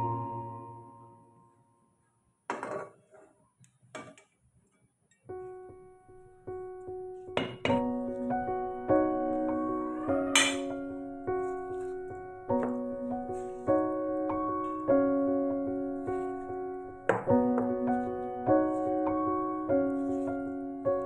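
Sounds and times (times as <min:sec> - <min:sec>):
background piano music: 0:00.0 - 0:02.0, 0:05.3 - 0:21.0.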